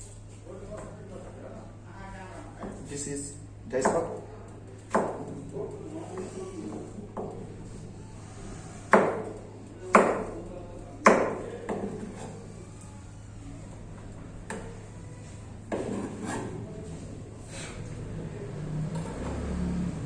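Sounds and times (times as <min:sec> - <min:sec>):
knife chopping on cutting board: 0:08.9 - 0:09.3, 0:09.9 - 0:10.3, 0:11.0 - 0:12.3.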